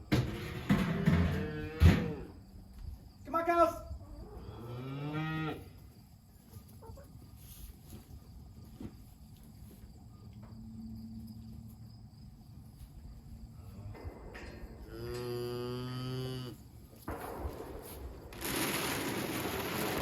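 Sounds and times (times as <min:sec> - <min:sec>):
cow mooing: 0:04.4 - 0:05.6, 0:14.8 - 0:16.6.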